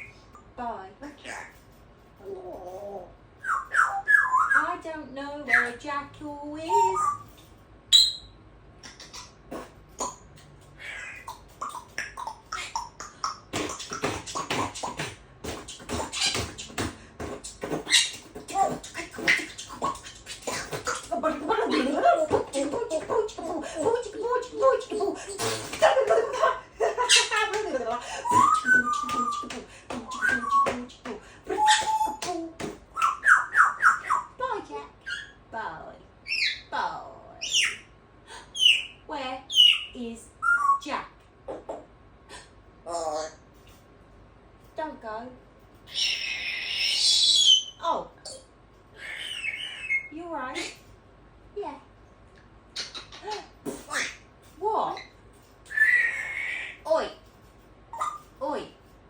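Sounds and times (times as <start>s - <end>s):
parrot voice-like sound: 1.1s - 1.6s, 6.6s - 7.3s, 10.8s - 25.8s, 26.9s - 35.4s, 38.6s - 43.4s, 45.9s - 47.9s, 49.0s - 50.8s, 52.8s - 54.2s, 55.7s - 57.2s
parrot high squeak: 3.4s - 4.8s, 6.7s - 8.4s, 15.8s - 16.7s, 17.4s - 21.1s, 28.1s - 30.9s, 31.5s - 32.3s, 33.0s - 34.4s, 35.0s - 35.4s, 36.3s - 36.7s, 37.4s - 37.9s, 38.6s - 40.9s, 45.9s - 48.4s, 49.0s - 50.8s, 53.9s - 54.2s, 54.9s - 56.9s, 57.9s - 58.3s
parrot clicks and chirps: 6.7s - 25.7s, 27.0s - 34.4s, 52.7s - 54.2s, 57.9s - 58.3s.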